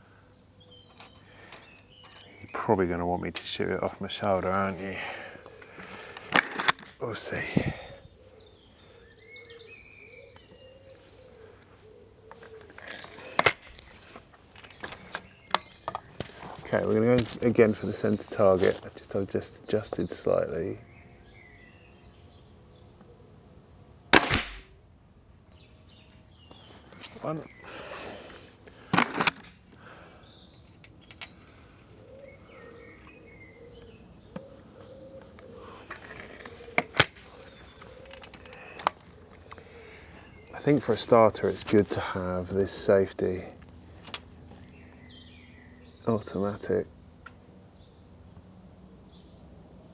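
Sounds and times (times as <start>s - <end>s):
birds chirping: 0.0s - 24.6s, 25.3s - 49.9s
dove cooing: 4.6s - 6.4s, 7.5s - 14.2s, 31.3s - 41.4s
air rifle firing: 24.1s - 24.8s.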